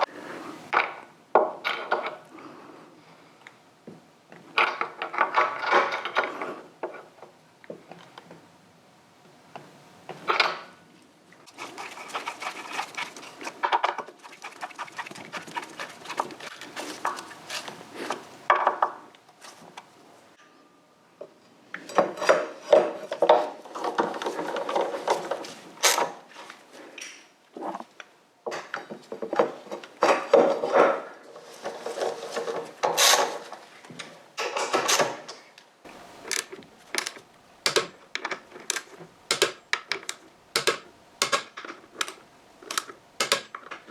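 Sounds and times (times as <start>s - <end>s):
scraping and rubbing: 11.5s - 18.4s, 30.5s - 33.8s
clicks and knocks: 36.2s - 43.9s.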